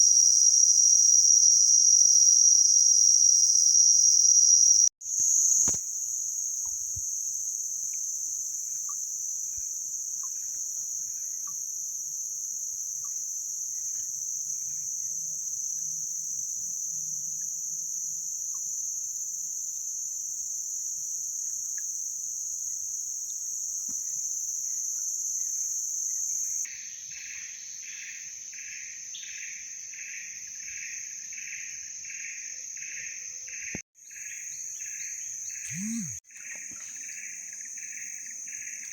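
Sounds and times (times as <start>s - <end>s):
pulsing insect call: 0.0s - 5.8s, 32.8s - 38.9s
insect chorus drone: 0.0s - 38.9s
faint bird chirps: 34.9s - 37.1s.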